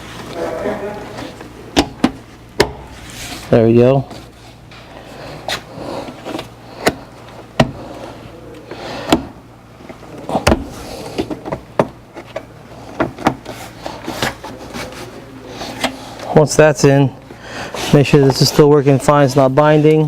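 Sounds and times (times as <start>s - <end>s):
rubbing and rustling: 2.9s - 8.2s, 10.6s - 16.3s.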